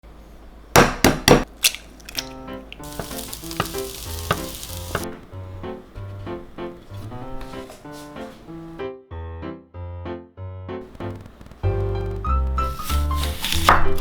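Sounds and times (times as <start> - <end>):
light piano music: 2.2 - 14.0
food sizzling in a frying pan: 2.3 - 5.1.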